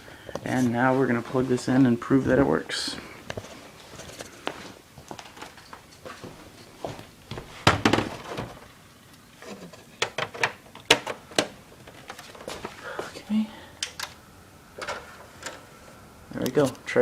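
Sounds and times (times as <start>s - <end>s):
console knocks: 7.6s - 8.5s.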